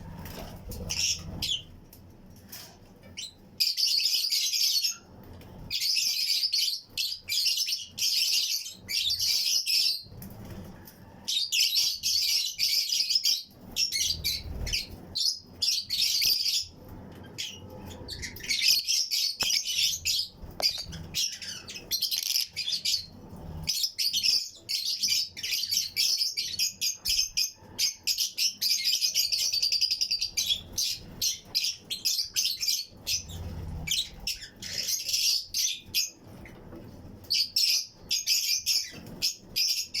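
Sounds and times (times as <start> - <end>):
lovebirds chirping: 11.2 - 36.6.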